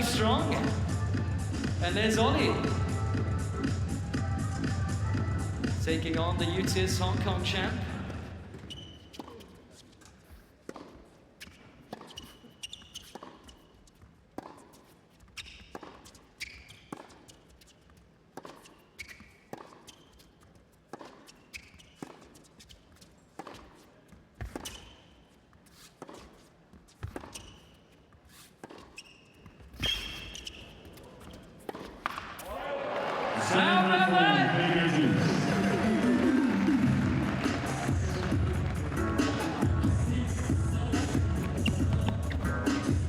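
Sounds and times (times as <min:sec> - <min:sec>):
ball bouncing on hard court: 0:00.0 - 0:09.6, 0:10.6 - 0:17.5, 0:18.3 - 0:25.2, 0:26.0 - 0:27.8, 0:28.5 - 0:32.6, 0:36.4 - 0:43.0
shoes squeaking on court: 0:00.0 - 0:32.6, 0:35.6 - 0:43.0
racket striking tennis ball: 0:10.6 - 0:17.5, 0:18.3 - 0:20.3, 0:20.9 - 0:22.7, 0:23.3 - 0:25.0, 0:25.8 - 0:27.7, 0:28.3 - 0:29.0, 0:31.2 - 0:32.6, 0:36.2 - 0:43.0.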